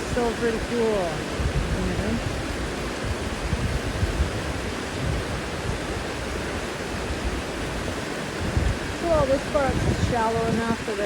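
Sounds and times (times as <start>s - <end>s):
waterfall rushing: 0.0s - 11.0s
wind buffeting microphone: 0.0s - 11.0s.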